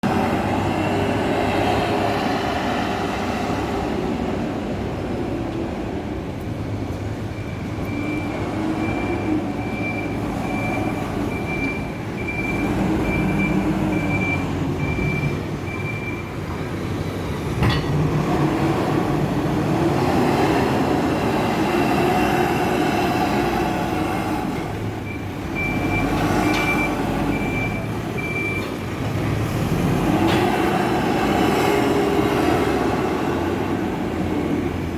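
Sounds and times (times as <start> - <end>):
backhoe diesel engine working: 0.0 - 34.9
reversing alarm beeping: 7.2 - 16.3, 25.0 - 28.8.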